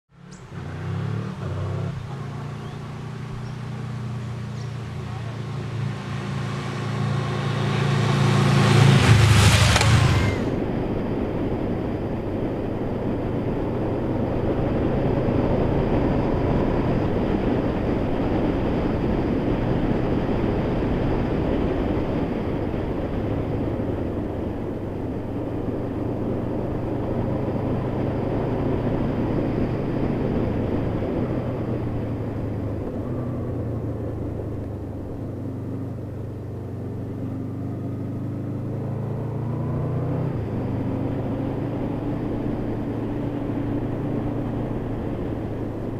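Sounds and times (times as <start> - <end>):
motorcycle engine running: 0.1 - 45.9
steady rushing noise: 3.0 - 38.0.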